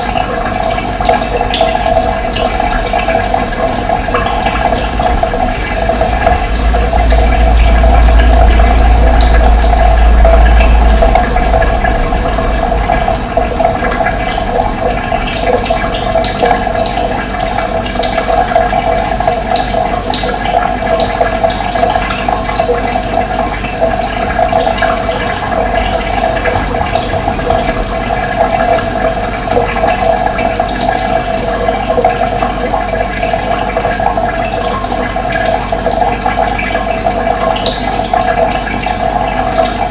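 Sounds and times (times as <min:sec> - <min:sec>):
water rushing: 0:00.0 - 0:39.9
deep low rumble: 0:01.7 - 0:18.5, 0:23.0 - 0:31.4.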